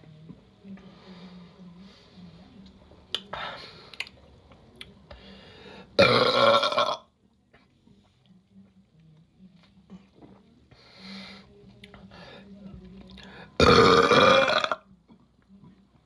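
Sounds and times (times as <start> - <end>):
woman burping loudly: 6.0 - 7.1, 13.6 - 14.8.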